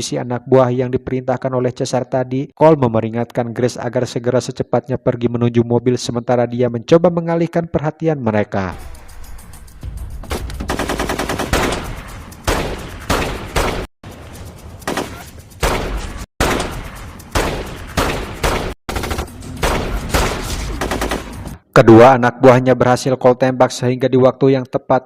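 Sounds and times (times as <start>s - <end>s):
rapid gunfire bursts: 10.6s - 13.9s, 14.8s - 21.5s.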